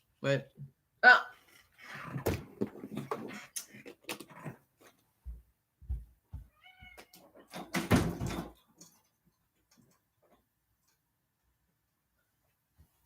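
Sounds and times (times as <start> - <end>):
cat meowing: 6.5 - 7.3.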